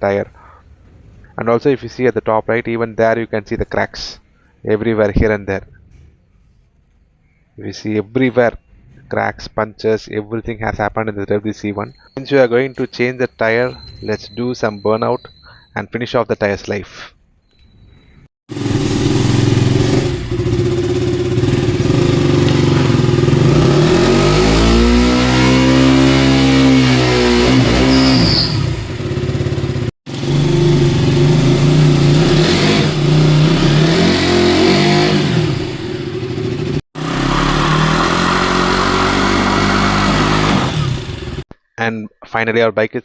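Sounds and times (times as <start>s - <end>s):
tyre squeal: 11.8s - 15.7s, 24.9s - 29.1s
motorcycle engine revving: 18.5s - 41.4s.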